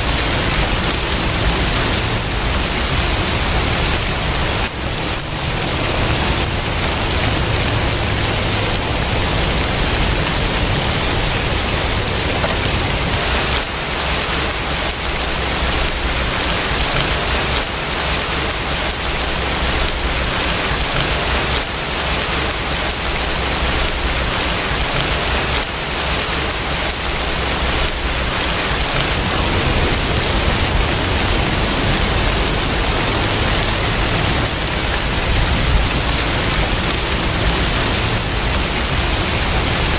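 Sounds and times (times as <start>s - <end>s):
heavy rain: 0.0s - 39.9s
low rumble: 27.4s - 39.9s.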